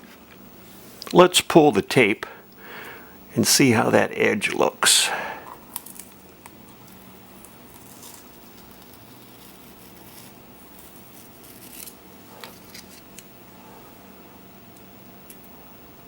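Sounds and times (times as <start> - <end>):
tape peeling rustle: 6.8 - 13.3.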